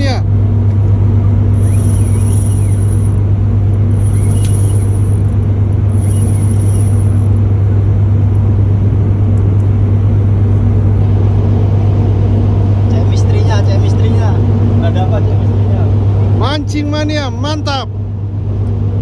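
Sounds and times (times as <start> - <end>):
engine running low hum: 1.5 - 7.4.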